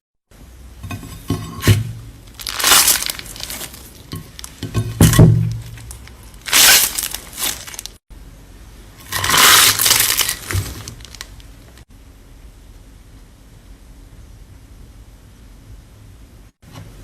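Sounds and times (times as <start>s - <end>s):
slime squeezed crackling: 2.3s - 4.6s, 5.6s - 8.0s, 9.0s - 11.4s.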